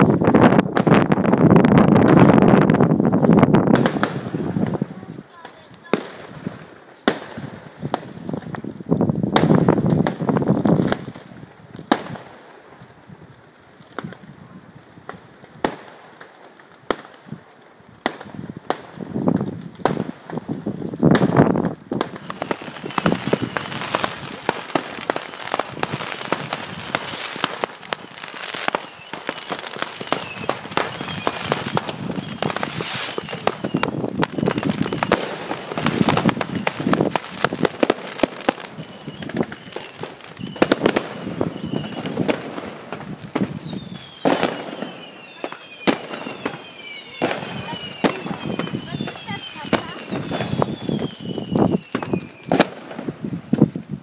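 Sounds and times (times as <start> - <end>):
fireworks bangs and crackle: 0.0 - 54.0
firework whistles: 21.1 - 53.9.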